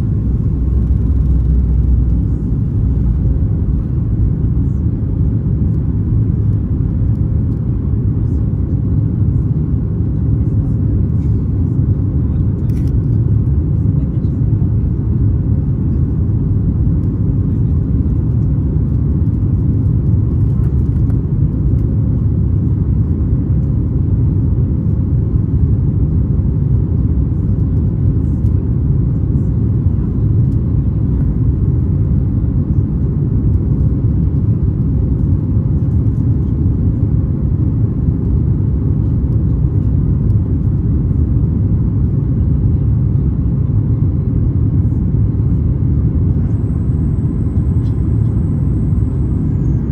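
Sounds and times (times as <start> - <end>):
airplane engine low rumble: 0.0 - 49.9
faint steady hum: 46.3 - 49.9.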